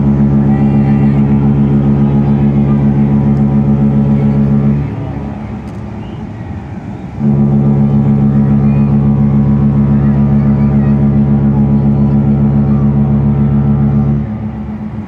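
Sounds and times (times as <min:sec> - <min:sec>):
deep ship horn blasts: 0:00.0 - 0:15.0.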